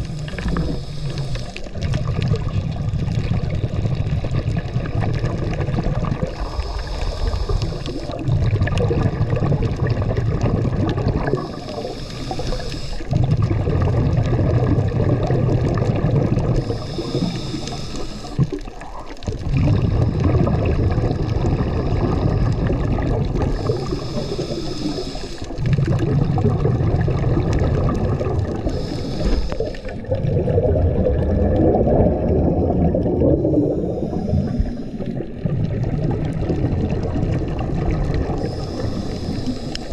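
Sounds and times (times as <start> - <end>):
regulator inhale hiss: 0.0 - 1.9, 6.2 - 8.3, 11.2 - 13.2, 16.5 - 19.2, 21.3 - 25.7, 28.6 - 30.1, 33.4 - 35.3, 38.3 - 39.9
exhaled bubbles rushing: 0.0 - 39.9.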